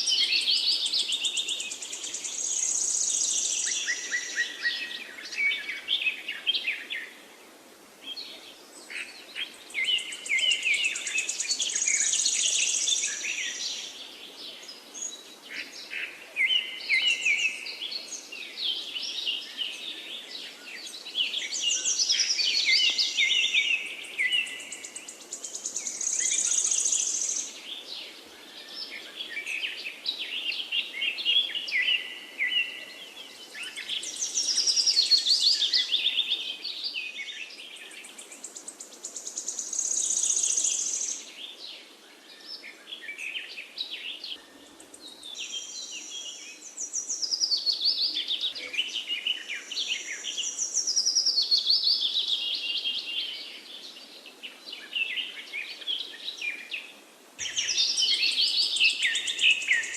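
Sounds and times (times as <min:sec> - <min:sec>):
forest birds singing: 0:00.0 - 0:59.9.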